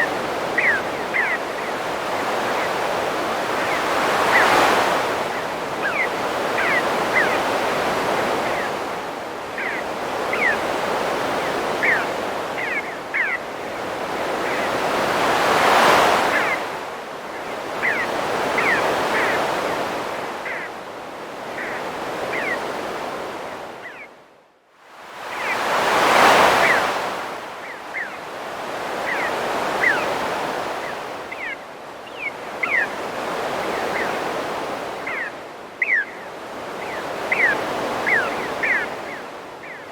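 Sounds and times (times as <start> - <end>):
birds chirping: 0.0 - 8.9, 9.5 - 16.7, 17.3 - 20.7, 21.5 - 22.7, 28.9 - 39.9
ocean surf washing: 0.0 - 20.6, 25.1 - 39.9.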